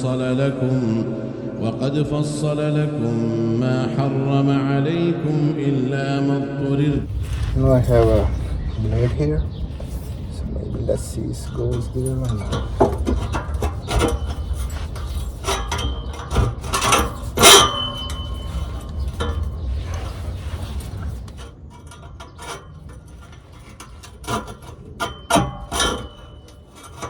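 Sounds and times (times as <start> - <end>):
tools clinking on metal pipe: 11.3 - 27.0.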